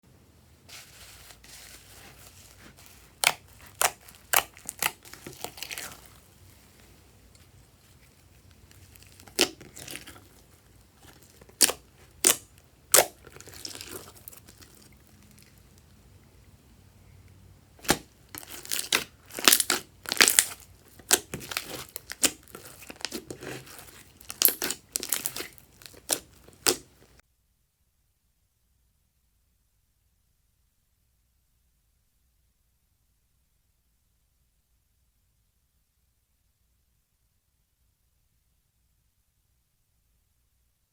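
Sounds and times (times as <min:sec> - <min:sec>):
slime crinkling and crackling: 0:00.7 - 0:15.9, 0:17.8 - 0:27.2.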